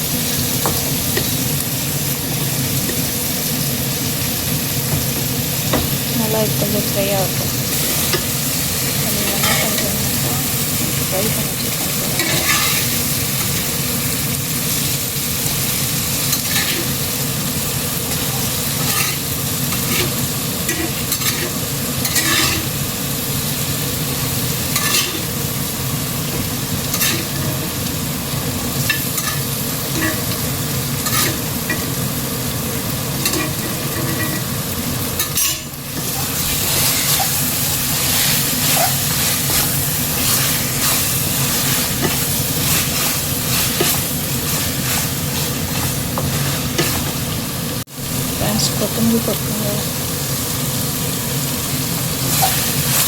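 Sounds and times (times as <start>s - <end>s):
chicken sizzling in a pan: 0.0s - 53.0s
spoon scraping a pan: 9.2s - 10.2s, 12.0s - 13.7s, 16.3s - 17.0s, 18.1s - 22.8s, 24.7s - 25.4s, 26.3s - 27.8s, 28.8s - 32.0s, 33.2s - 34.6s, 35.2s - 47.2s, 52.2s - 53.0s.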